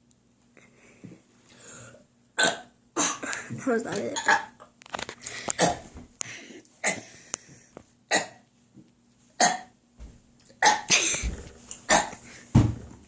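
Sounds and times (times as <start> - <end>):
person making throat sounds: 1.6 - 3.3, 5.5 - 5.9, 10.5 - 12.3.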